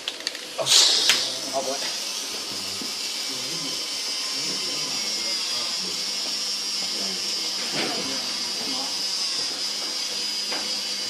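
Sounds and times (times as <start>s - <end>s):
small electric motors whirring: 0.0s - 11.0s
high-pitched hiss: 0.6s - 3.7s
faint voices: 0.6s - 6.2s.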